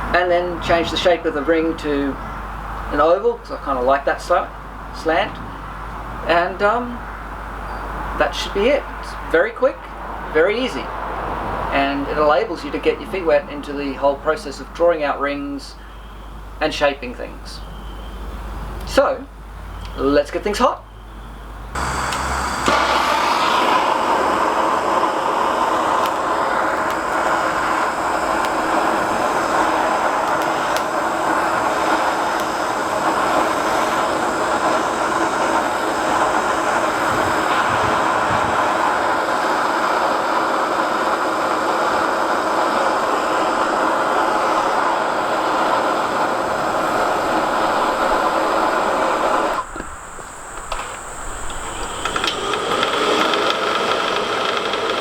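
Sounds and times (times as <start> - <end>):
forge rushing: 21.8 - 40.1, 42.1 - 53.7.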